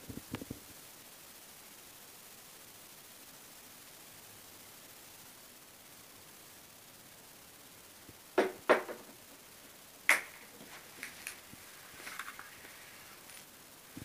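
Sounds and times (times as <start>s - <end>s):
sharp knocks: 8.4s - 9.2s.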